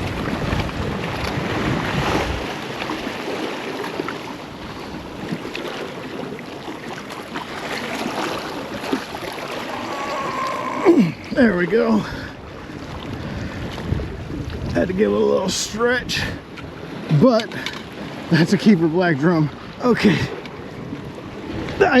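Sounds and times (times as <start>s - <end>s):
wind buffeting microphone: 0.0s - 6.4s, 8.1s - 17.2s
surf waves: 0.0s - 22.0s.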